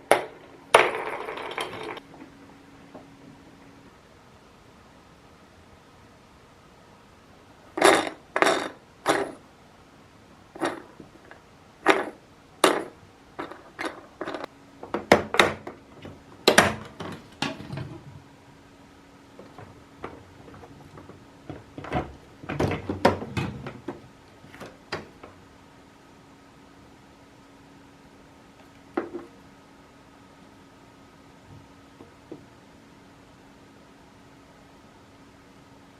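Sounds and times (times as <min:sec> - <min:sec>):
hard objects knocking and clicking: 0:00.0 - 0:02.0, 0:10.6 - 0:18.2, 0:19.4 - 0:25.4, 0:28.9 - 0:29.3
faint steady hum: 0:00.0 - 0:35.9.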